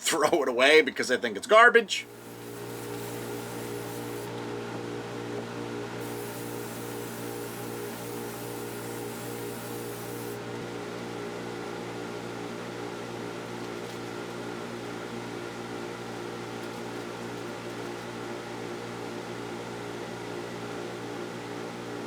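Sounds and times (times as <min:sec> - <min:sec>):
mechanical hum of fan or motor: 0:00.0 - 0:22.0
even hiss: 0:02.0 - 0:04.3, 0:06.0 - 0:10.4.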